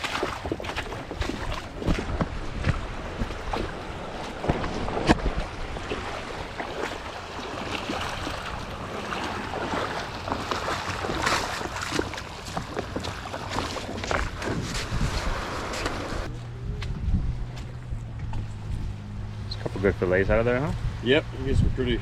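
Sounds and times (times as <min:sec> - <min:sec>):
water lapping against kayak: 0:00.0 - 0:16.3
wind buffeting microphone: 0:00.0 - 0:22.0.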